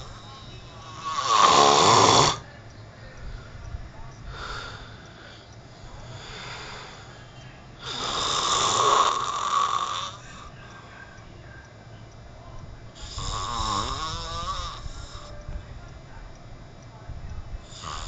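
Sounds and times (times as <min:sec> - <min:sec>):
man snoring: 0:00.8 - 0:02.4, 0:05.8 - 0:07.1, 0:07.8 - 0:10.5, 0:13.0 - 0:15.3, 0:17.7 - 0:18.0.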